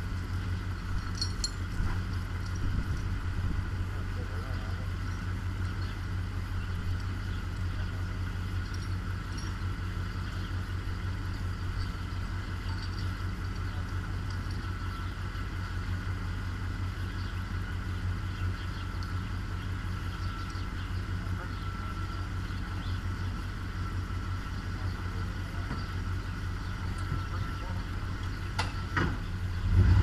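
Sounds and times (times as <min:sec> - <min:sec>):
faint steady whine: 0:00.0 - 0:29.8
engine running: 0:00.0 - 0:30.0.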